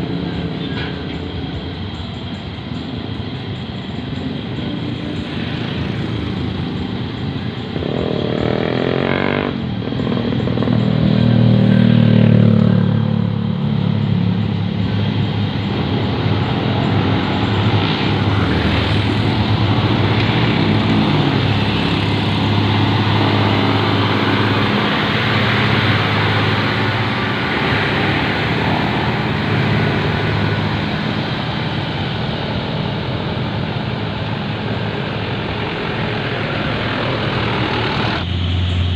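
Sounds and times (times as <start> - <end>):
diesel truck engine revving: 4.6 - 38.9.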